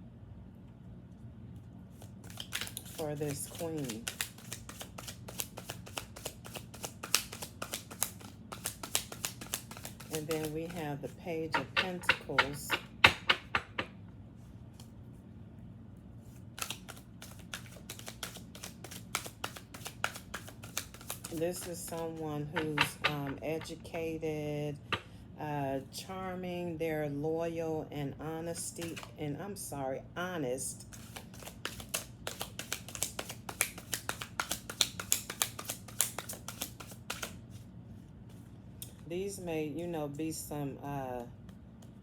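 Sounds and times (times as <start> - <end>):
low steady hum: 0.0 - 42.0
cards clicking and tapping: 2.2 - 10.8, 11.5 - 13.9, 16.6 - 23.7, 24.9 - 25.1, 28.8 - 29.1, 30.9 - 37.4.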